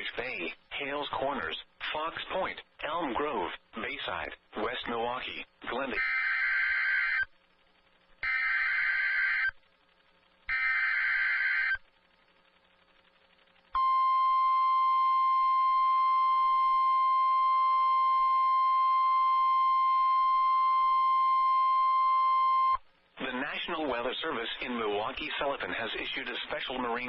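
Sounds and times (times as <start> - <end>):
steady warning alarm tone: 8.2 - 9.5, 10.5 - 11.8.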